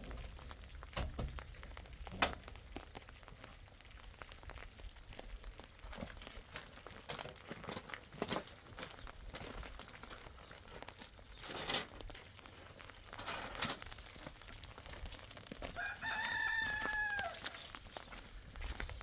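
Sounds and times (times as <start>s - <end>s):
short rustling noises: 13.2s - 19.0s
rooster crowing: 15.8s - 17.4s.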